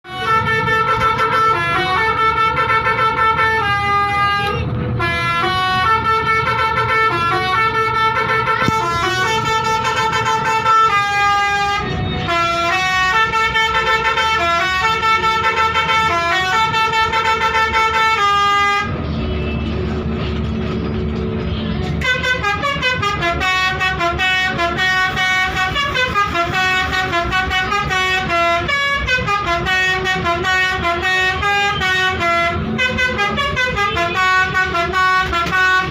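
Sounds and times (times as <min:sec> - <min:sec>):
musical vehicle horn melody: 0:00.1 - 0:20.6, 0:21.5 - 0:35.9.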